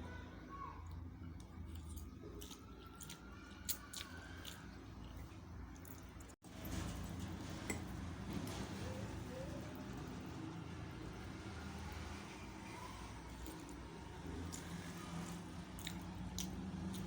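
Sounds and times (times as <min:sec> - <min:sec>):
low background hum: 0:00.0 - 0:17.0
chewing noodles: 0:01.4 - 0:06.4, 0:12.8 - 0:17.0.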